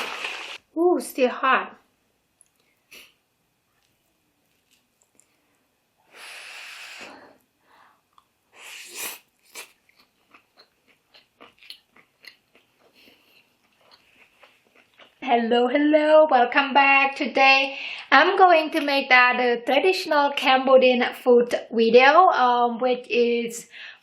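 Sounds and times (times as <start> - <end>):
crunchy chewing: 8.9 - 15.2.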